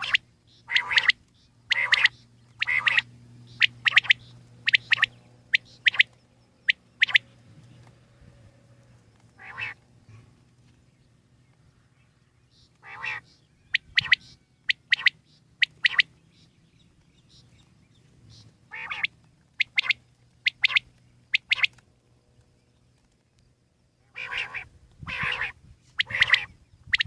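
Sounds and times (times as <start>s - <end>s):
quail singing: 0.0s - 7.7s, 9.4s - 9.8s, 12.5s - 16.5s, 17.2s - 21.8s, 24.0s - 27.0s.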